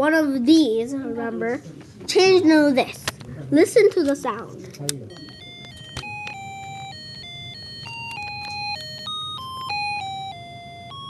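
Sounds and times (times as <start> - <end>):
beeping electronic melody: 5.0 - 11.0.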